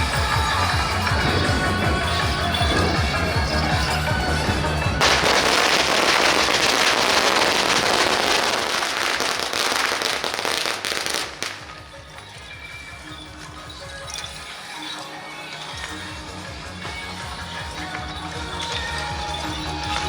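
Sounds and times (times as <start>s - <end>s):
loud procession music: 0.0s - 13.2s
firecrackers crackling: 0.0s - 20.0s.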